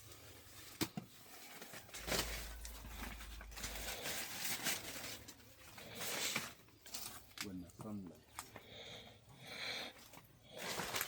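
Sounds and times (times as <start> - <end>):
dry leaves rustling: 1.4 - 7.2.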